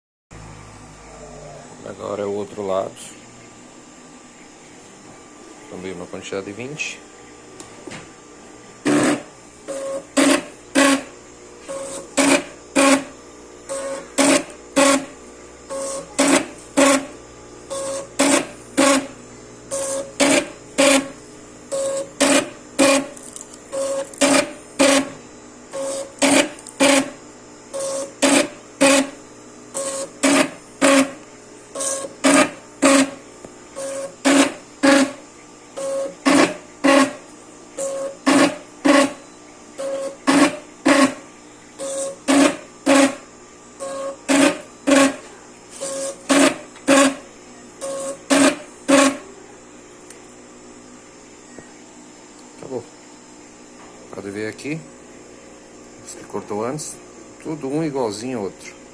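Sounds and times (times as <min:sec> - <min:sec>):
machine feed whir: 0:08.6 - 0:49.5.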